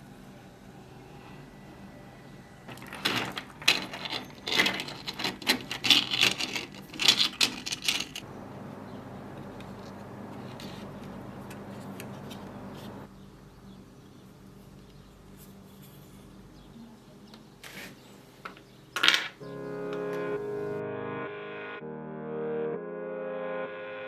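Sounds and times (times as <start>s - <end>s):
small hard pieces clattering: 2.7s - 8.2s
steady hum: 8.2s - 13.1s.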